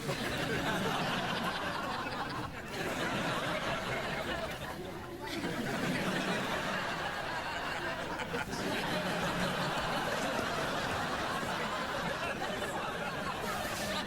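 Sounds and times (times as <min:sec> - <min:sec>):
studio audience laughing: 0:00.0 - 0:14.0.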